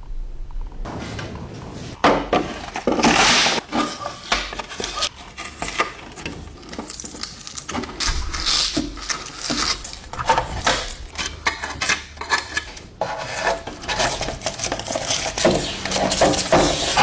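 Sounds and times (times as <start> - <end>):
metal scraping: 0.5 - 5.1.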